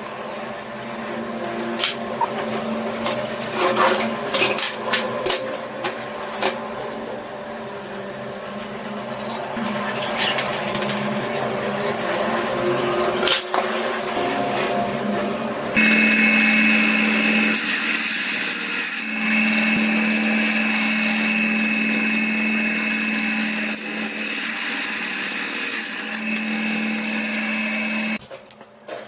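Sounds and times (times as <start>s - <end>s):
electric power tool whining: 15.8s - 28.2s.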